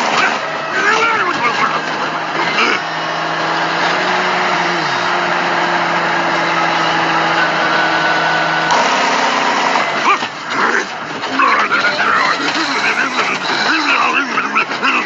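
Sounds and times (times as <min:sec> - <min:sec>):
steady engine-like drone: 0:00.0 - 0:15.0.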